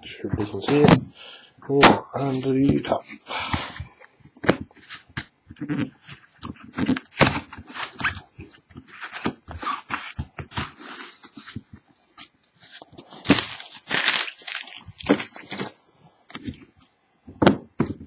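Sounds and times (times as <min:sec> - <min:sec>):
hands handling trading cards: 0:04.4 - 0:16.7.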